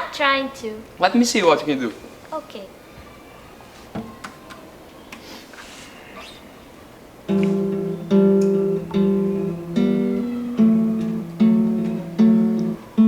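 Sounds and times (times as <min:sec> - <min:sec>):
acoustic guitar strumming chords: 0:07.2 - 0:13.0.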